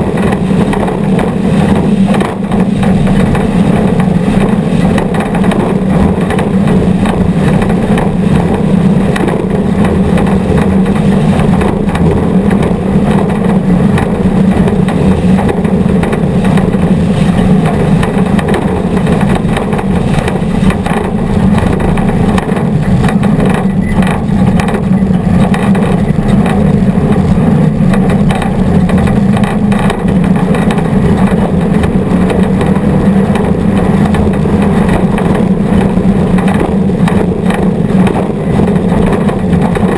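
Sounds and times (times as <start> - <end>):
race vehicle engine running: 0.0 - 39.9.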